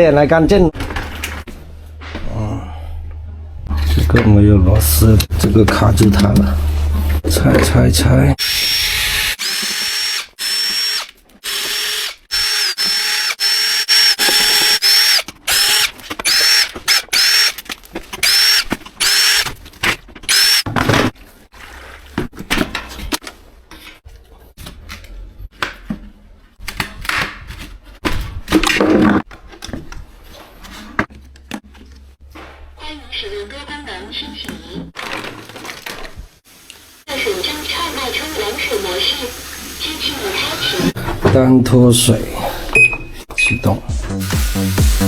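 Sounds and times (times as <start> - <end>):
plastic and metal parts clattering: 0.8 - 1.6, 14.0 - 21.4, 22.2 - 31.9, 34.4 - 36.4
power drill whining: 8.4 - 17.6, 18.2 - 19.5, 20.3 - 20.6, 37.2 - 41.0.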